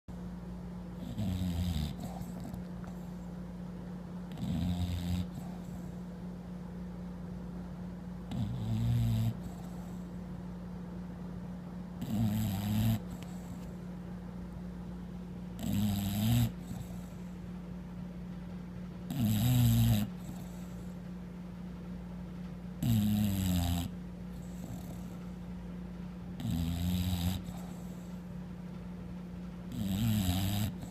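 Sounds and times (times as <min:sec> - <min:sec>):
dog snoring: 0:01.0 - 0:03.3, 0:04.3 - 0:06.1, 0:08.2 - 0:10.2, 0:11.9 - 0:13.8, 0:15.5 - 0:17.4, 0:19.1 - 0:21.0, 0:22.8 - 0:25.4, 0:26.4 - 0:28.3, 0:29.7 - 0:30.9.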